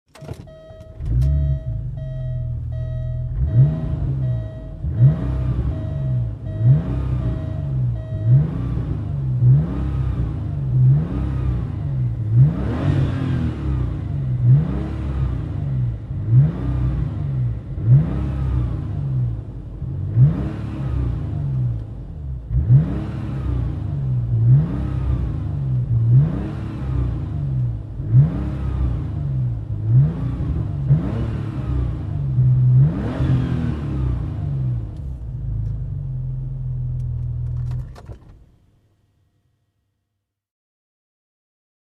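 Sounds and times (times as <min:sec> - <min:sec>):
car engine starting and revving: 0:00.1 - 0:38.5
electronic warning chime beeping: 0:00.2 - 0:08.7.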